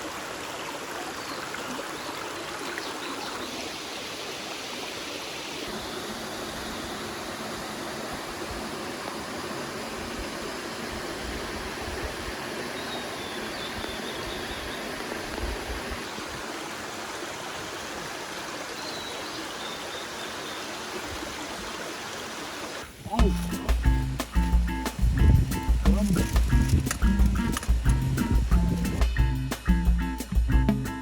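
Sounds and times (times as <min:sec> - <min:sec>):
stream rushing over rocks: 0:00.0 - 0:24.6.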